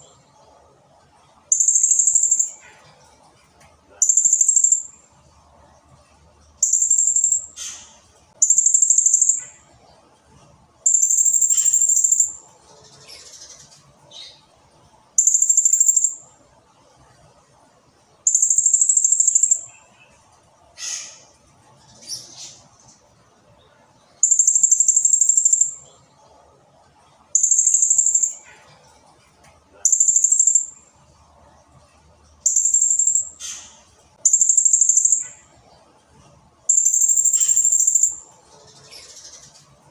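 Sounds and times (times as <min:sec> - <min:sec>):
parrot trilling: 0:36.7 - 0:38.2.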